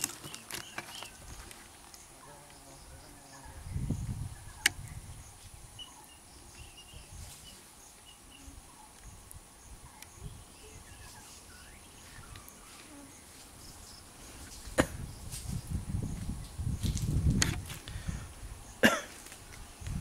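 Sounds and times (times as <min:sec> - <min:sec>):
bird chirps: 0:00.2 - 0:14.4.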